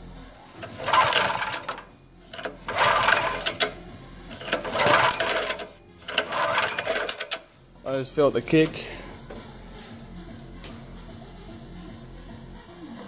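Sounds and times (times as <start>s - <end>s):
generator engine turning over: 0.6s - 7.5s.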